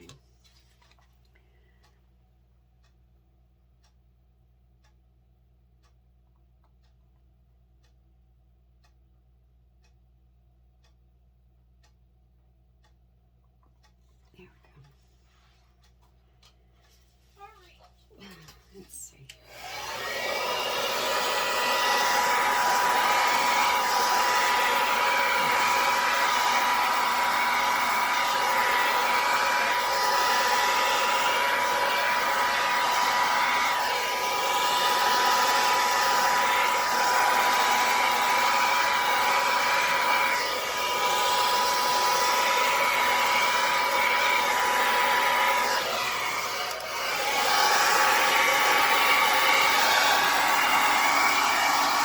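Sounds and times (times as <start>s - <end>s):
hair dryer blowing: 19.4s - 52.0s.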